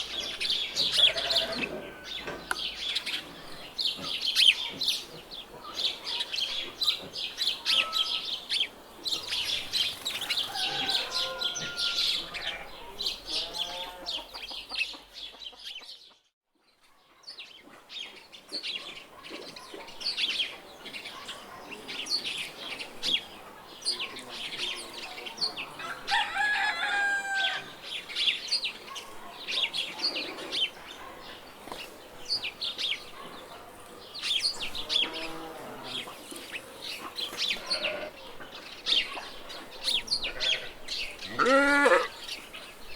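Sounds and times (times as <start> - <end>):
chickens clucking: 0.0 - 8.2, 9.1 - 16.2
small birds chirping: 0.0 - 26.7, 27.7 - 41.4
rooster crowing: 10.2 - 12.7, 25.8 - 27.8.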